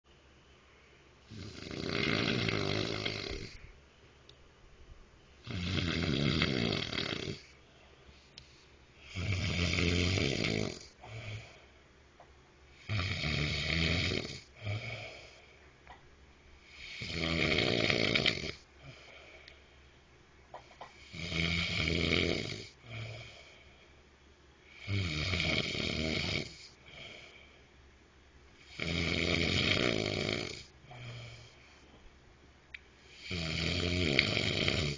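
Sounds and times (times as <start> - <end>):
man snoring loudly: 1.3 - 3.6, 5.4 - 7.6, 9.0 - 11.6, 12.7 - 15.4, 16.6 - 19.2, 21.0 - 23.5, 24.7 - 27.3, 28.6 - 31.6, 33.1 - 34.9
man breathing softly: 7.5 - 9.0, 10.9 - 11.9, 14.6 - 15.8, 18.8 - 20.1, 22.8 - 24.0, 26.7 - 27.8, 30.8 - 32.1.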